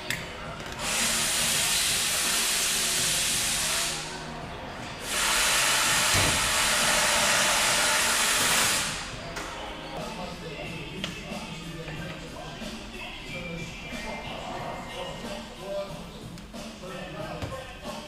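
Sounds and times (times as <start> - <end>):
pressurised spray hissing: 0.8 - 4.2, 5.0 - 9.1.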